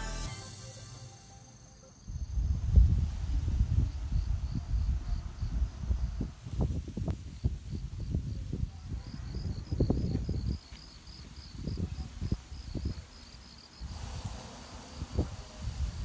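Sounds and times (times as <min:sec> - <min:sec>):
crickets chirping: 0:00.2 - 0:16.0.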